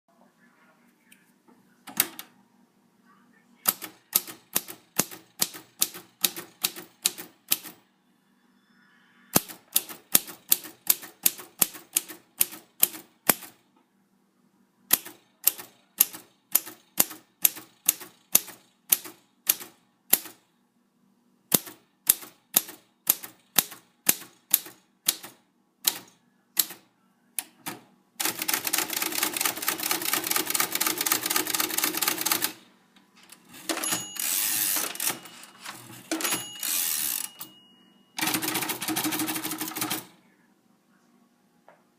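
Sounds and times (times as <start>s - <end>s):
typewriter typing: 3.7s - 7.8s, 9.4s - 13.6s, 14.9s - 20.4s, 21.5s - 26.8s, 27.6s - 32.6s, 33.2s - 37.6s, 38.2s - 40.1s.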